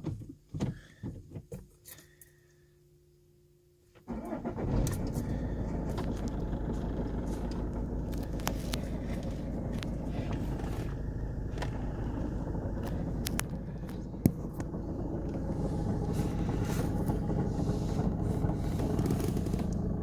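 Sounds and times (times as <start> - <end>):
diesel engine starting and idling: 4.1 - 20.0.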